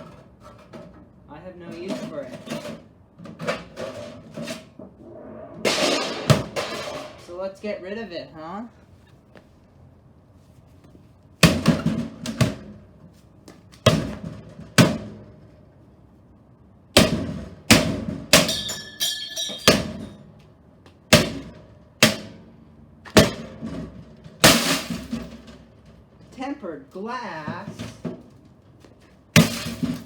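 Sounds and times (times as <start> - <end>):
crash: 4.8 - 7.3.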